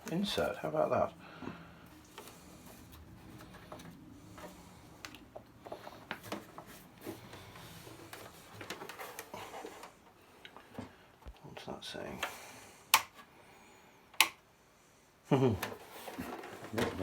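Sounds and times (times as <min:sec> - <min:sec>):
clicks and rustling of handling: 0:02.0 - 0:13.3, 0:15.6 - 0:17.0.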